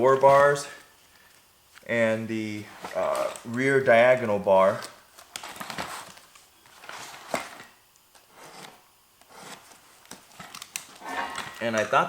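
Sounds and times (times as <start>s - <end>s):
rustling: 4.8s - 12.0s.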